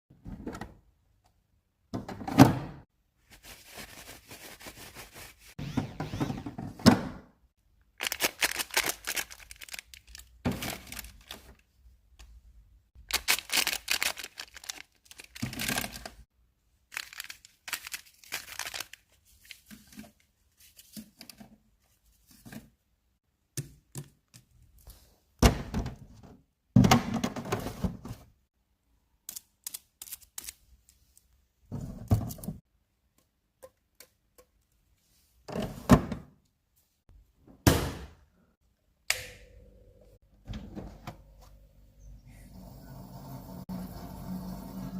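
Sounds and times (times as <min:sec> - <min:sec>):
items thunking into fridge: 0:01.9 - 0:02.8, 0:10.4 - 0:11.0, 0:25.4 - 0:28.2
packaging tearing and crinkling: 0:08.0 - 0:11.5, 0:13.1 - 0:16.2, 0:16.9 - 0:19.0.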